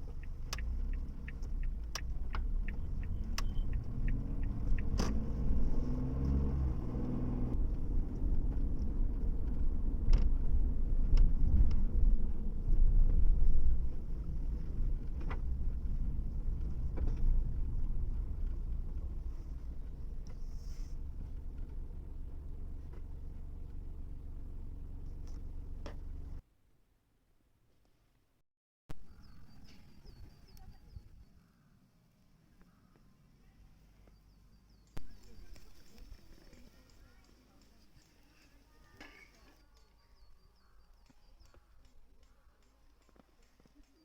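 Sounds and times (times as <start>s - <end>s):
car road and engine rumble: 0.0s - 26.4s, 28.9s - 44.0s
sharp clicks: 0.1s - 5.3s.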